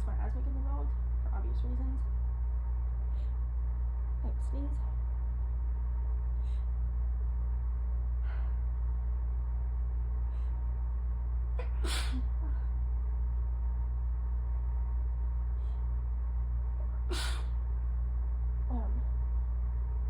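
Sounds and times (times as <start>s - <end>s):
low hum: 0.0s - 20.0s
catching breaths: 8.2s - 8.8s, 10.2s - 10.8s
woman sneezing: 11.6s - 12.4s, 17.1s - 17.4s.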